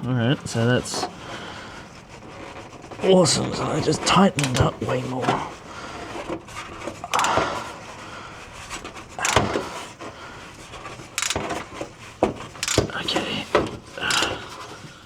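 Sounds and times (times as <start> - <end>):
wrench knocking on metal bolts: 7.1 - 7.4, 9.2 - 9.8, 11.1 - 14.6.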